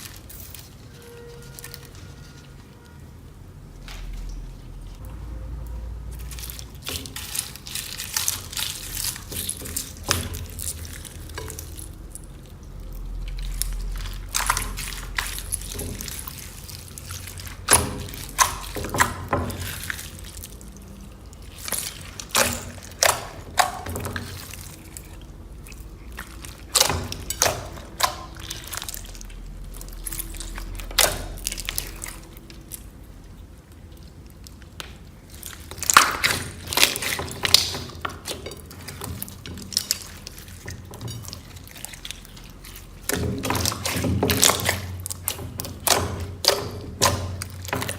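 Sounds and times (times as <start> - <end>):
slime squishing wet clicks: 21.4 - 33.0, 33.7 - 47.9.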